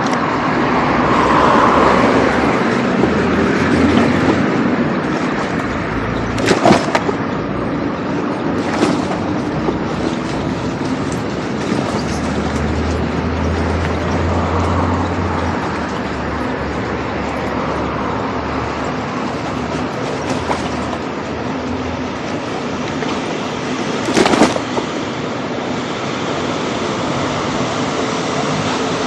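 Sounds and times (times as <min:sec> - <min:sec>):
low engine hum: 0:00.0 - 0:28.8
street traffic: 0:00.0 - 0:29.0
short clatter: 0:01.7 - 0:14.8, 0:18.4 - 0:25.2.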